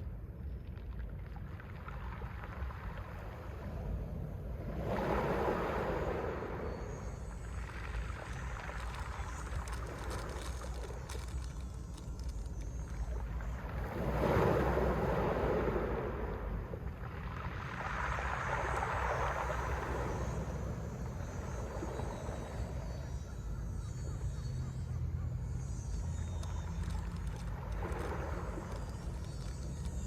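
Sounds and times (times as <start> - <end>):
sea waves breaking on shore: 1.3 - 23.3, 26.3 - 30.0.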